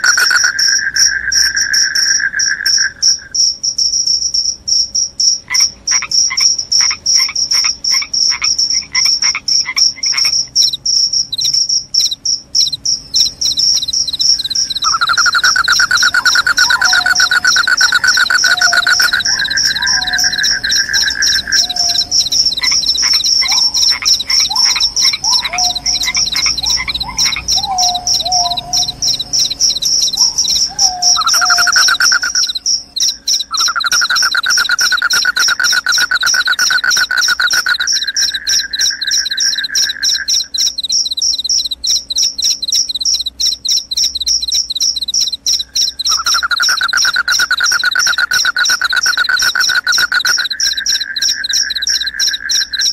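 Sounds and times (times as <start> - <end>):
crickets high trill: 0.0 - 52.9
crickets lower trill: 0.0 - 52.9
bird calling sliding notes: 13.0 - 52.9.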